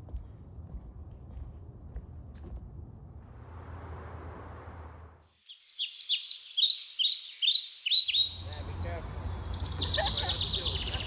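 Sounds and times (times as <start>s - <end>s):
low rumbling outdoor noise: 0.0s - 5.2s, 8.2s - 11.0s
songbird singing: 5.4s - 11.0s.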